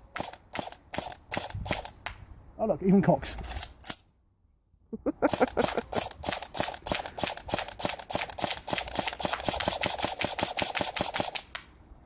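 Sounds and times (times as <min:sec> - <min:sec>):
electric airsoft gun firing: 0:00.1 - 0:02.0, 0:05.3 - 0:11.5.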